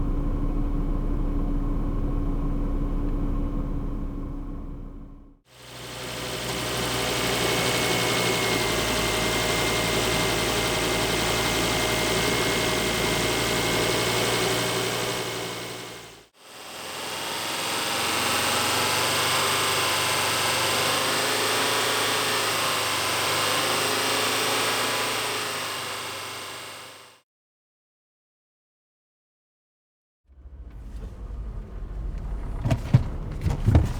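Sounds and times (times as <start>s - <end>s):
car engine driving: 0.0s - 26.9s, 30.3s - 33.9s
road noise: 30.3s - 33.9s.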